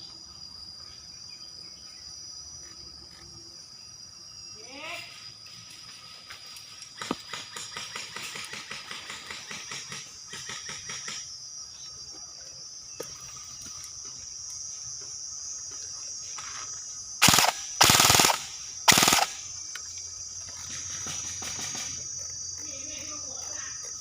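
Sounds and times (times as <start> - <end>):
high insect buzz: 0.0 - 24.0
airsoft gun firing: 17.2 - 19.4.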